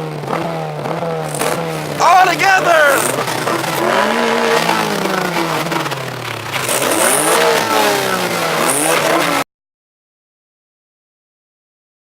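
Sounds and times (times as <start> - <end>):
car engine revving: 0.1 - 2.1, 3.0 - 9.4.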